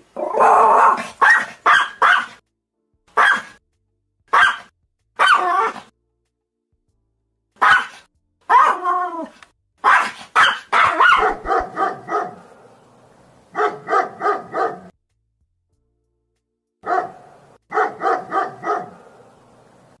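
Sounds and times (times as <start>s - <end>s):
dog barking: 0.2s - 2.4s, 3.1s - 3.6s, 4.3s - 5.9s, 7.6s - 8.9s, 9.8s - 12.7s, 13.5s - 15.0s, 16.8s - 19.3s.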